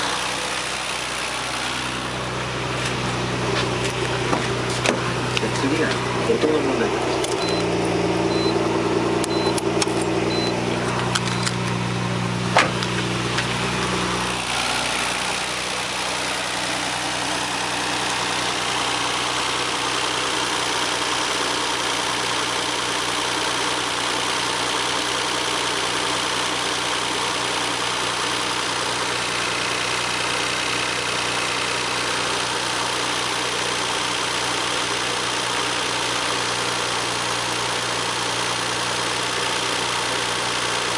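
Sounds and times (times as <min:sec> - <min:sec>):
car engine idling: 0:00.0 - 0:40.9
short high beeps: 0:07.4 - 0:07.7, 0:08.3 - 0:08.6, 0:09.2 - 0:09.6, 0:10.3 - 0:10.6.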